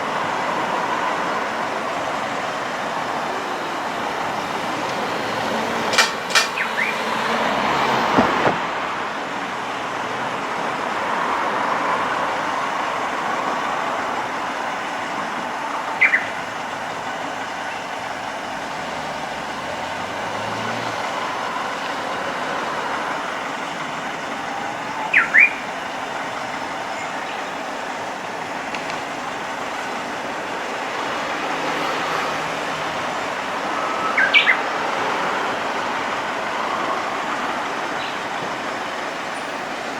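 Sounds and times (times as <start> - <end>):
road traffic noise: 0.0 - 39.9.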